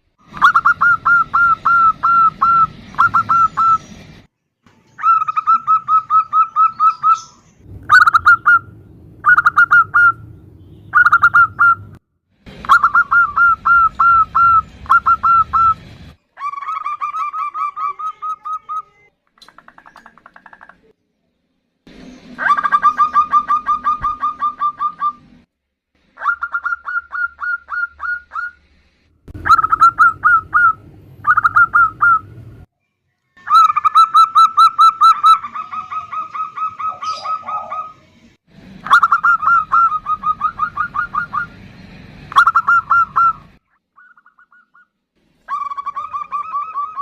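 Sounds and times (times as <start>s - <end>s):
dove staccato call: 0.3s - 3.8s, 12.6s - 15.8s, 29.3s - 32.2s, 33.5s - 38.0s, 38.8s - 41.6s, 42.3s - 44.9s
low hum: 7.5s - 16.2s, 28.5s - 32.7s.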